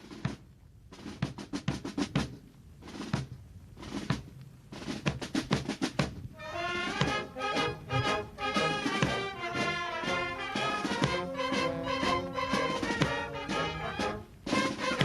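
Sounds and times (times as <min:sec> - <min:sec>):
snare drum rolls: 0:00.0 - 0:15.0
brass instruments holding notes: 0:06.4 - 0:15.0.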